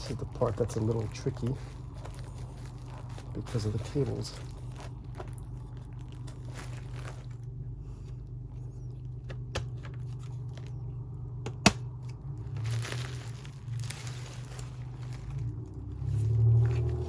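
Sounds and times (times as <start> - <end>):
handling rustles: 0.0 - 11.0, 12.1 - 17.0
steady low hum: 0.0 - 17.0.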